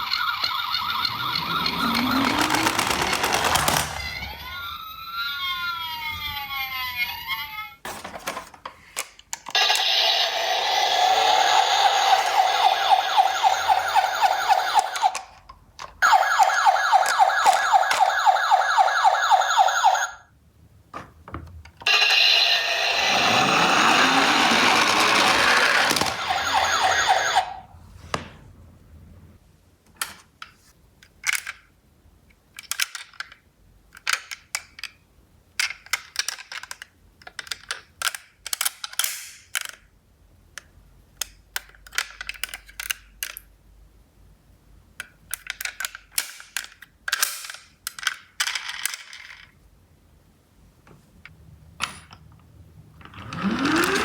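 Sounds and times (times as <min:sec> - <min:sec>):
toy cars clicking and clattering: 0:00.0 - 0:04.6, 0:08.2 - 0:16.2, 0:21.8 - 0:27.5, 0:31.0 - 0:31.7, 0:32.5 - 0:43.6, 0:45.0 - 0:49.6, 0:53.0 - 0:54.0.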